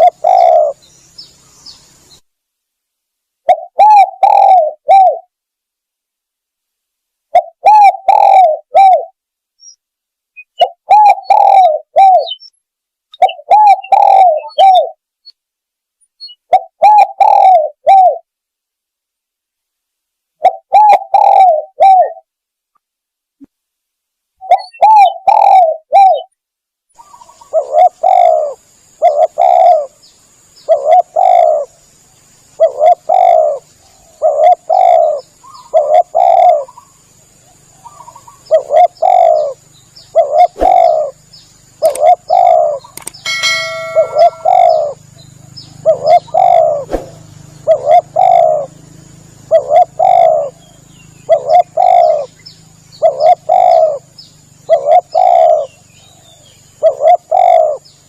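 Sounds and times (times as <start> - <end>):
dove cooing: 0.0 - 0.8, 3.4 - 5.3, 7.3 - 9.2, 10.6 - 12.4, 13.2 - 15.0, 16.5 - 18.3, 20.4 - 22.3, 24.4 - 26.3, 27.0 - 30.0, 30.6 - 31.8, 32.6 - 36.9, 37.5 - 41.2, 41.8 - 57.9.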